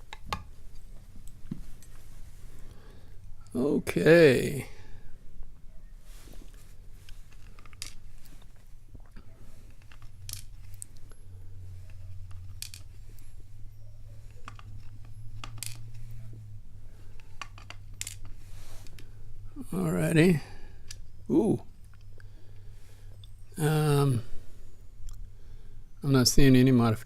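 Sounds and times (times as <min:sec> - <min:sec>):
faint low hum: 0:00.0 - 0:27.0
padlock parts clicking: 0:07.1 - 0:08.5, 0:09.6 - 0:11.2, 0:11.8 - 0:13.3, 0:14.2 - 0:16.2, 0:17.1 - 0:19.0, 0:20.8 - 0:21.1.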